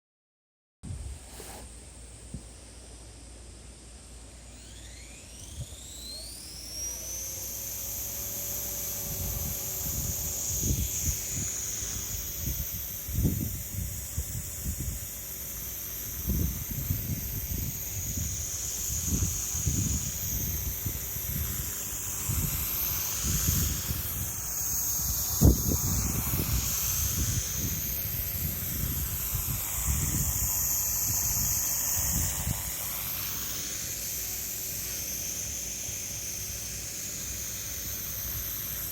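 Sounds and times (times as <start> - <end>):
rc helicopter whine: 1.6 - 38.9
wind buffeting microphone: 16.2 - 24.4, 25.0 - 33.0.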